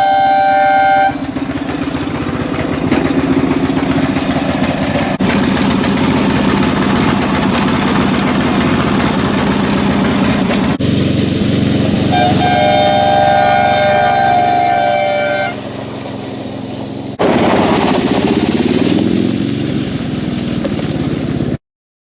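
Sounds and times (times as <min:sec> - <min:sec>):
electric air horns chord: 0:00.0 - 0:01.6, 0:10.7 - 0:16.4
riding lawn mower engine: 0:00.0 - 0:21.6.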